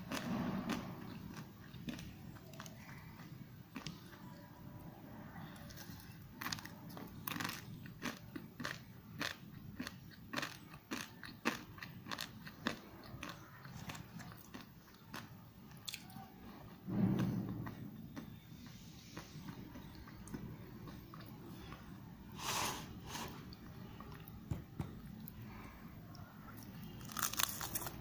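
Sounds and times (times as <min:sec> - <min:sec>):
crunching and chewing noodles: 0:00.0 - 0:04.4, 0:05.4 - 0:22.0, 0:25.3 - 0:28.0
loud dull sound: 0:16.8 - 0:18.2.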